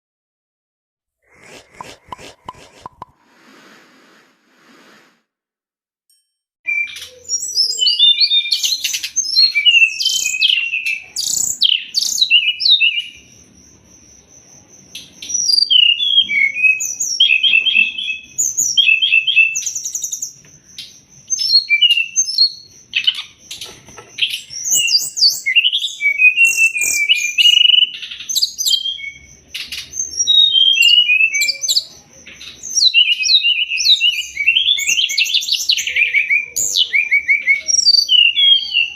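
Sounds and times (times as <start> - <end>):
bird chirping song: 6.7 - 38.9.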